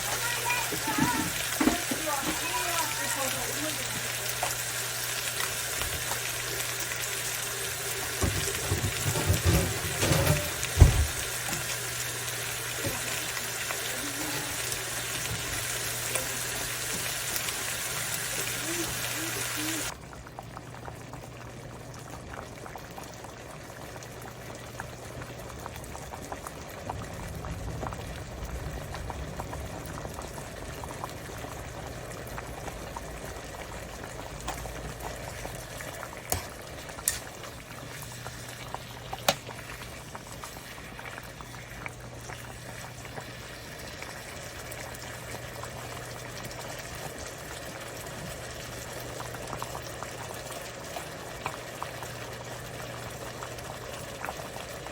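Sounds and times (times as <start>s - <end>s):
stew bubbling at a boil: 0.0s - 54.9s.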